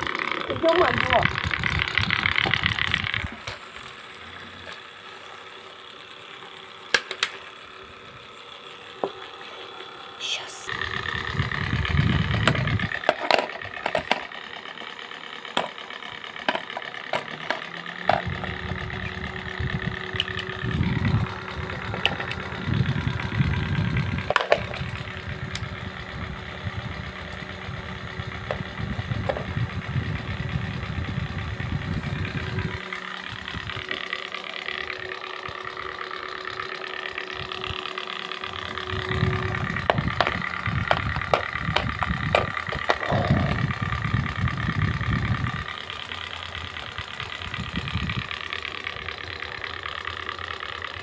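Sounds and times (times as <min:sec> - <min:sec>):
electric fans humming and whining: 0:00.0 - 0:51.0
air buffeting microphone: 0:10.7 - 0:13.0, 0:18.2 - 0:33.9
scattered clicks: 0:16.4 - 0:51.0.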